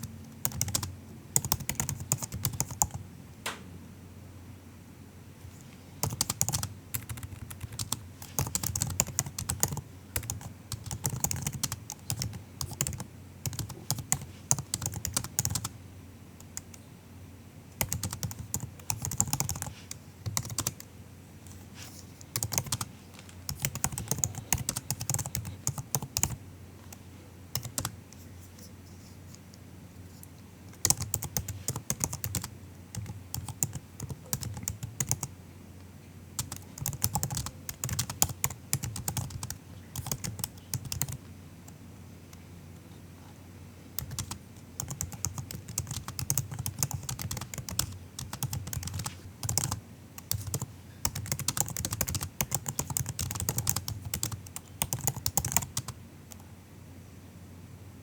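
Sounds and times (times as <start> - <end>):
laptop keyboard typing: 0.0 - 3.0, 6.0 - 15.8, 16.4 - 16.8, 17.8 - 20.9, 22.2 - 28.0, 30.7 - 35.3, 36.4 - 41.8, 44.0 - 56.4.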